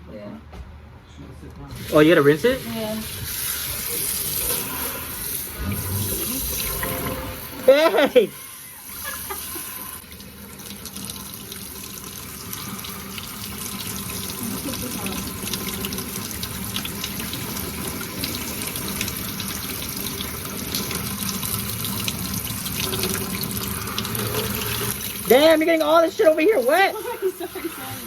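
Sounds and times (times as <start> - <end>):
tap water running into sink: 1.8 - 28.0.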